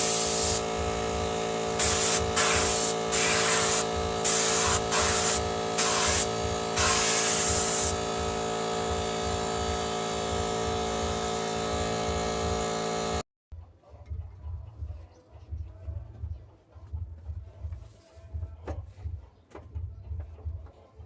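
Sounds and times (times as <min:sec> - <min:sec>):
compressed air hissing: 0:00.0 - 0:11.9
air compressor humming: 0:00.0 - 0:13.2.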